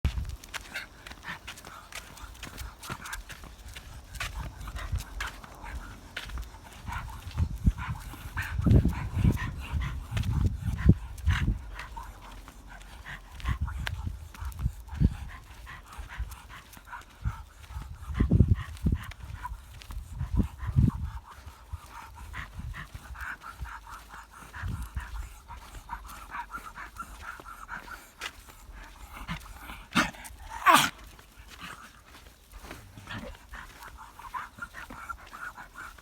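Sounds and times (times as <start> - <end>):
animal harrumphing: 29.0 - 31.9.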